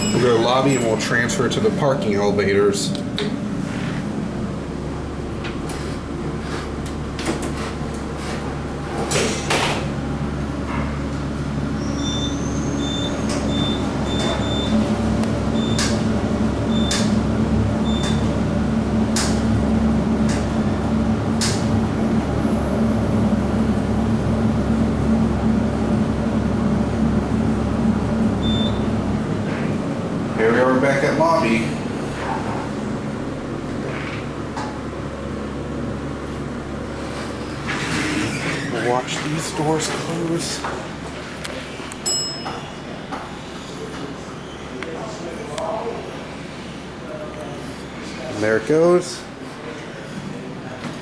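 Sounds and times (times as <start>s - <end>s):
elevator cab rumble and hum: 0.0s - 48.5s.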